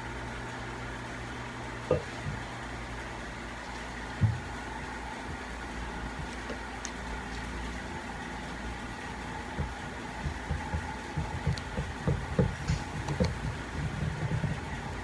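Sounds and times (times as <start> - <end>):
steady shop hum: 0.0 - 15.0
low thuds and rubbing: 4.0 - 5.6, 9.5 - 15.0.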